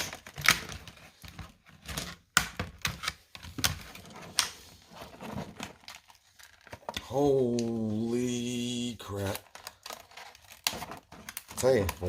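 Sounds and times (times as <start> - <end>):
packaging rustling: 0.0 - 12.0
plastic packaging cracking open: 5.6 - 7.8, 8.6 - 12.0.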